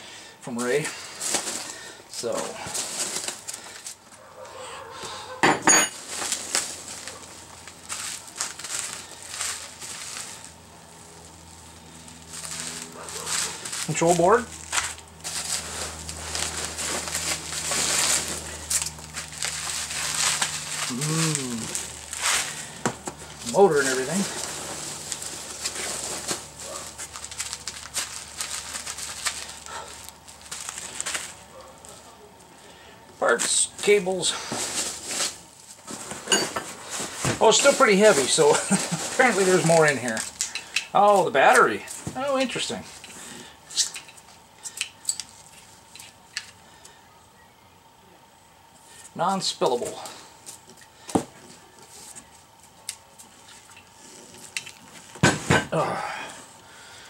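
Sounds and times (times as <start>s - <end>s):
packing material rustling: 1.0s - 4.0s, 6.0s - 32.2s, 33.2s - 43.1s.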